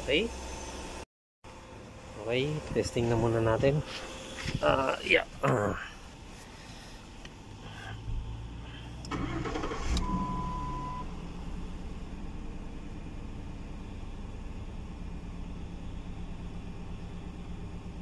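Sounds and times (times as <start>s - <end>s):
car engine starting and idling: 1.6s - 18.0s
short steady beep: 10.0s - 11.1s.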